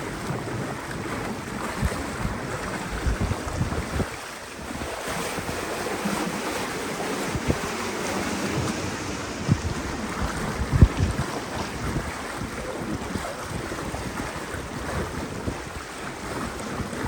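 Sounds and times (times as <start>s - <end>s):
water washing around hull: 0.0s - 17.0s
wind on microphone: 0.0s - 17.0s
low wind gust thumps: 3.0s - 15.7s.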